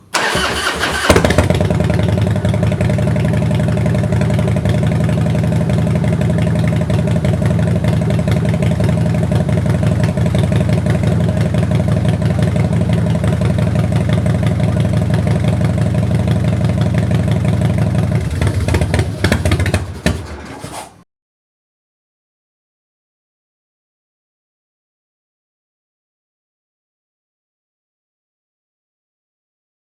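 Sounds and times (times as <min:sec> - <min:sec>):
motorcycle engine starting and idling: 0:00.0 - 0:21.0.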